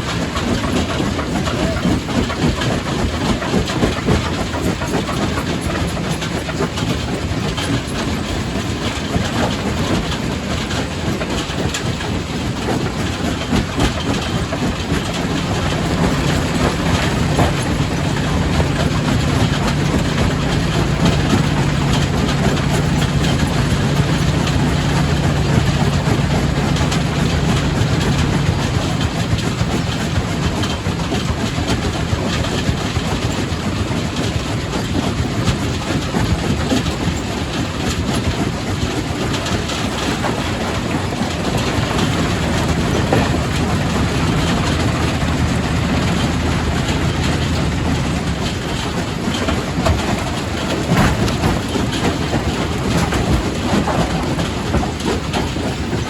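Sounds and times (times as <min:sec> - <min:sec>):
rock crusher rumbling: 0:12.4 - 0:34.2, 0:39.0 - 0:56.0
low machine hum: 0:14.0 - 0:33.4, 0:40.3 - 0:56.0
rocks knocking and grinding: 0:49.8 - 0:52.2.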